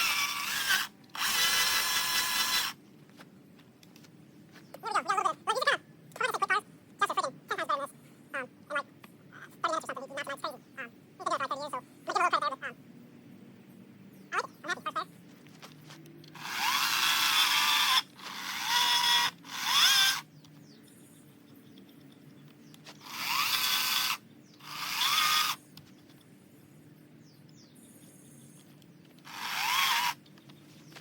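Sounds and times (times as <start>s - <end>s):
power tool cutting wood: 0.0s - 2.7s, 16.4s - 20.2s, 23.0s - 25.6s, 29.3s - 30.2s.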